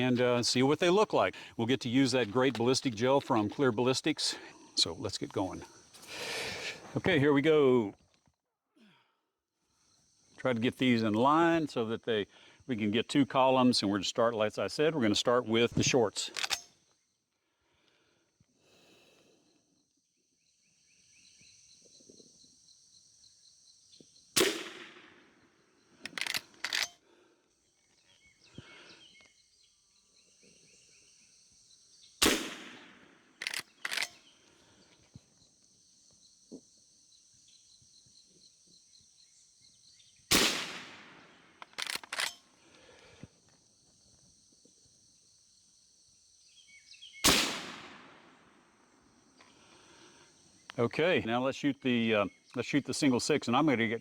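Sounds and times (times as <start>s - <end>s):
rifle lever metallic clacks: 16.3s - 16.7s, 26.1s - 27.0s, 33.4s - 34.1s, 41.6s - 42.4s
rifle shots: 24.4s - 25.2s, 32.2s - 34.1s, 40.3s - 42.3s, 47.2s - 48.3s.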